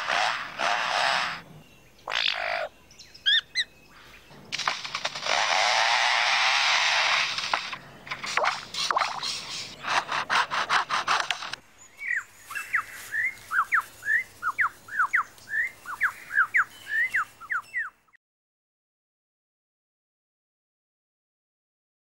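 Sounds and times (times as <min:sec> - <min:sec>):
bird mimicking a chainsaw: 0:00.0 - 0:01.5, 0:04.5 - 0:11.6
bird whistling: 0:03.2 - 0:03.7, 0:11.9 - 0:18.0.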